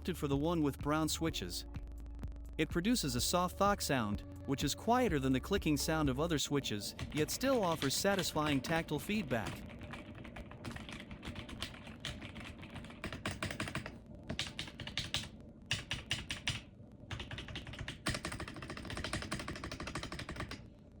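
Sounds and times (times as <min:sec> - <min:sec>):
mechanical keyboard typing: 0:07.0 - 0:20.6.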